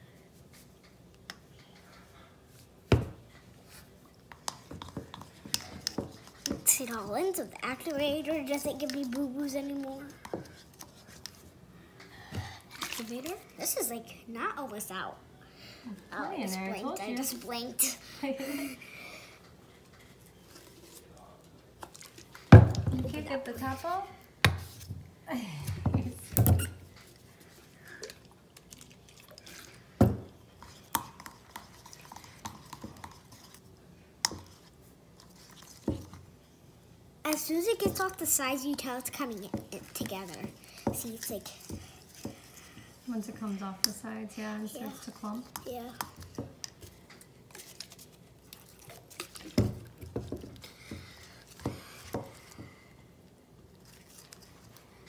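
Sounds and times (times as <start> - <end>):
slime stirring: 0.4 - 11.7, 12.6 - 14.9, 19.7 - 24.0, 26.6 - 36.6, 37.3 - 55.0
slime squishing: 44.7 - 52.6.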